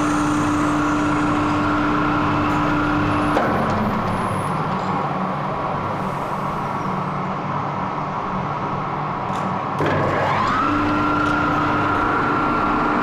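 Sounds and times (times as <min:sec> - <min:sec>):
lathe motor whine: 0:00.0 - 0:03.4, 0:09.8 - 0:13.0
machinery hum: 0:00.0 - 0:13.0.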